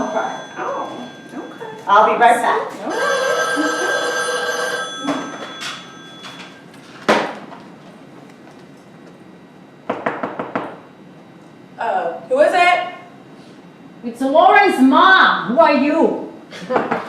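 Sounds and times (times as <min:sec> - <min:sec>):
telephone ringing: 0:00.0 - 0:06.7
knocking on a door: 0:09.9 - 0:10.8.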